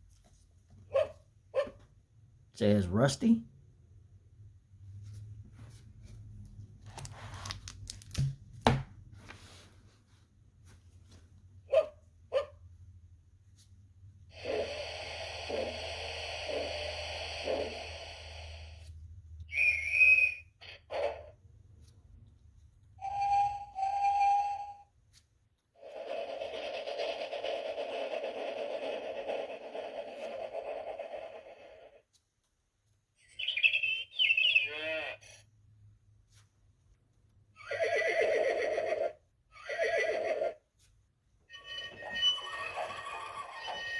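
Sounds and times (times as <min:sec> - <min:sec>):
whistle toots: 0:19.5 - 0:20.8, 0:23.0 - 0:24.8
steam train chuffing: 0:25.9 - 0:31.1
horse whinnying: 0:37.6 - 0:40.6.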